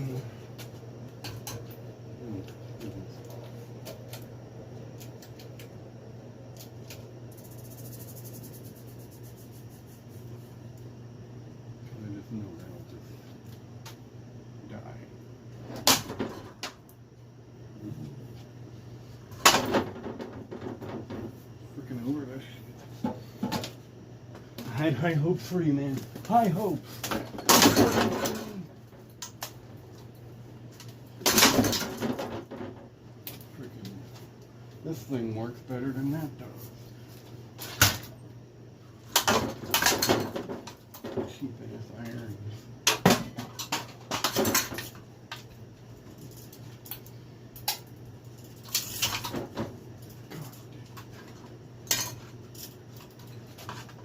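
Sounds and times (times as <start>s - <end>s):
ceiling fan being smashed: 15.7s - 16.8s, 19.3s - 21.3s, 27.0s - 29.7s, 30.8s - 33.4s, 37.6s - 38.2s, 39.0s - 41.4s, 42.8s - 45.5s, 46.2s - 49.8s.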